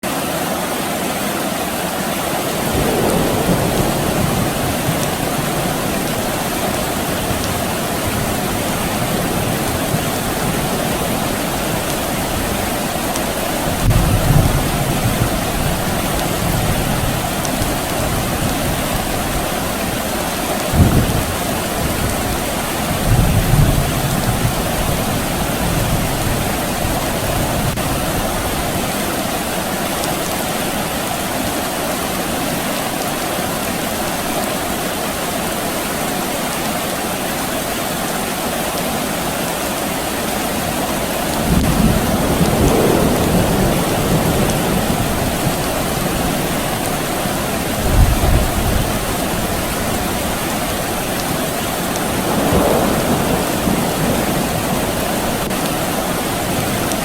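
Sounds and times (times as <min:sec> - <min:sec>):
soft rain falling: 0:00.0 - 0:57.0
distant thunder rumbles: 0:02.5 - 0:29.0, 0:41.0 - 0:57.0.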